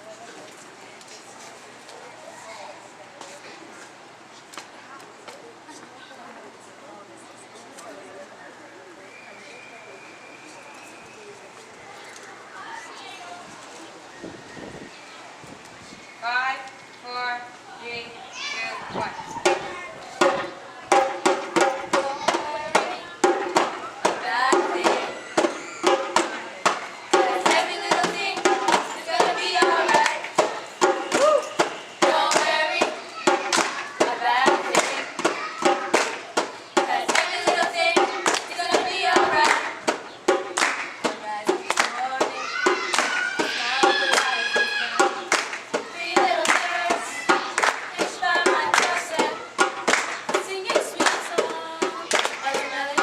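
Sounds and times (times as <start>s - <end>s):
sharp percussive beat: 19.4s - 53.0s
rhythmic hand clapping: 20.3s - 53.0s
children singing: 21.2s - 36.2s, 36.8s - 39.8s, 40.7s - 53.0s.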